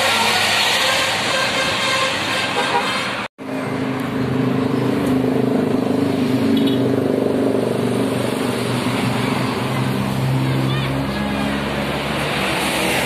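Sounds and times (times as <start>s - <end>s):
rush of passing vehicles: 0.0s - 13.0s.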